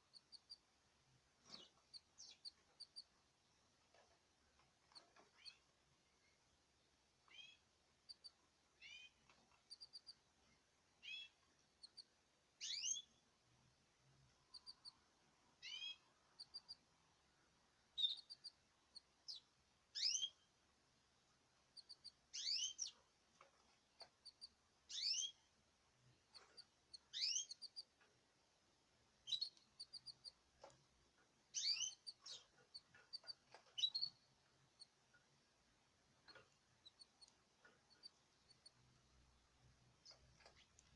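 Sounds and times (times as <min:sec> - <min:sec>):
very high tiny chirps: 0:11.0 - 0:13.1, 0:15.6 - 0:16.8, 0:18.0 - 0:19.4, 0:20.0 - 0:20.4, 0:21.8 - 0:23.0, 0:24.2 - 0:25.4, 0:26.6 - 0:27.9, 0:29.2 - 0:30.4, 0:31.5 - 0:35.0, 0:36.8 - 0:38.8
birds rising chirps: 0:22.3 - 0:23.1, 0:24.4 - 0:25.5, 0:26.4 - 0:27.8, 0:31.5 - 0:34.9.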